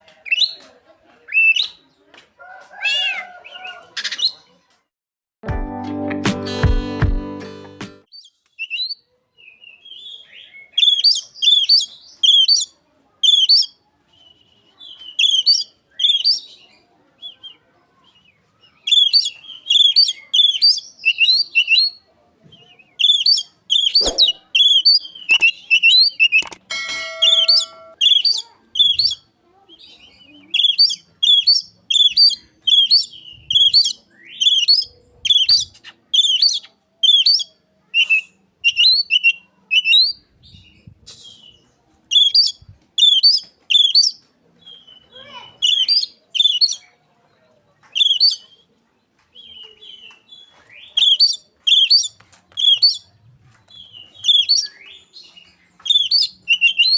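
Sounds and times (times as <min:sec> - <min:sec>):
magpie-robin singing whistled notes: 0:08.2 - 0:16.6, 0:18.9 - 0:22.0, 0:30.5 - 0:46.9, 0:48.0 - 0:48.6, 0:49.4 - 0:53.0, 0:53.8 - 0:55.0, 0:55.8 - 0:56.9.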